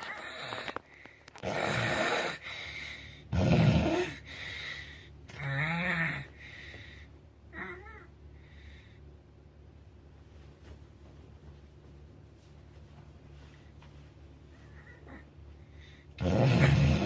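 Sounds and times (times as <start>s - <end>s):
person snoring: 1.4s - 4.4s, 5.3s - 6.4s, 16.2s - 17.0s.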